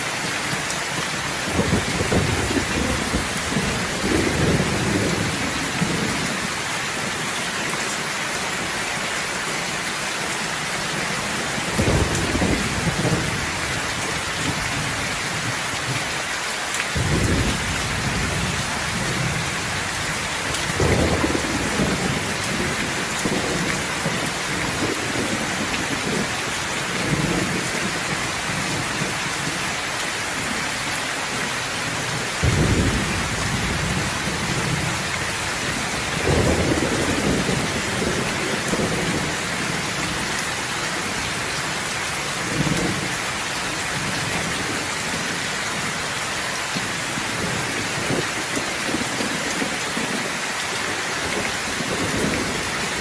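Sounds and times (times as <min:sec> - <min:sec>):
heavy rain falling: 0:00.0 - 0:53.0
rolling thunder rumbling: 0:01.4 - 0:06.4, 0:11.6 - 0:13.6, 0:17.0 - 0:26.3, 0:32.4 - 0:40.3.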